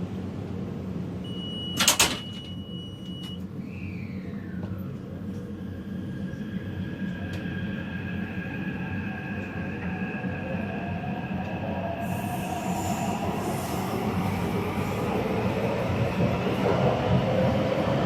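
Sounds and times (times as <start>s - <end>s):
high warning beep: 1.2s - 3.4s
electric train drive whine: 3.4s - 17.9s.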